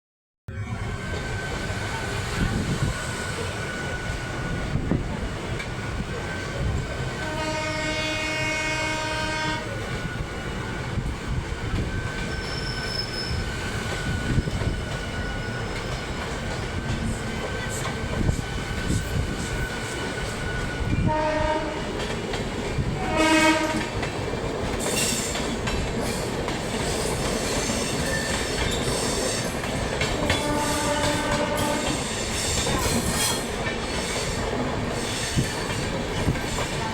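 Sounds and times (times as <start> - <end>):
train rolling on rails: 0.5 - 36.9
locomotive horn: 7.2 - 9.8, 21.0 - 22.0, 23.0 - 24.1, 30.2 - 32.1.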